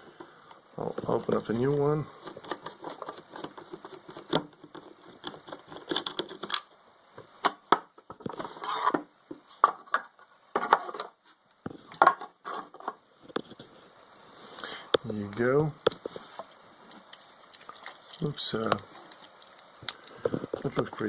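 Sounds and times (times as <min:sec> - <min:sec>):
packaging rustling and crinkling: 0:16.0 - 0:21.0.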